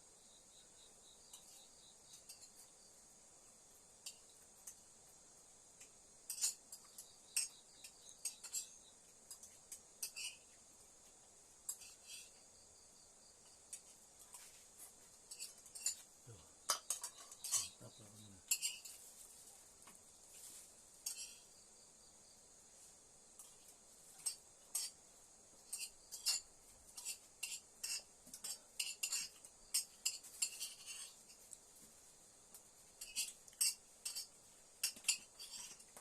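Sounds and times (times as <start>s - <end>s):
crickets chirring: 0.0s - 36.0s
spoon clinking on cookware: 6.3s - 10.5s, 16.7s - 19.0s, 25.7s - 31.2s, 33.0s - 35.8s.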